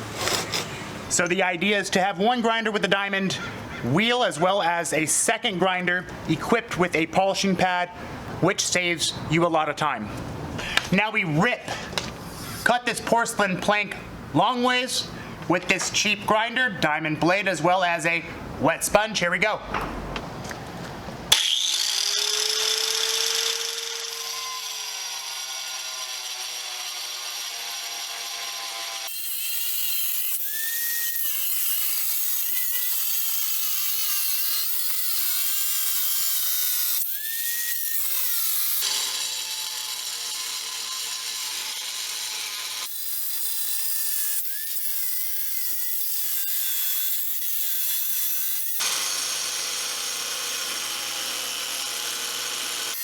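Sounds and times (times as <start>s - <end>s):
grinder cutting through tile: 0.0s - 0.7s, 21.3s - 53.0s.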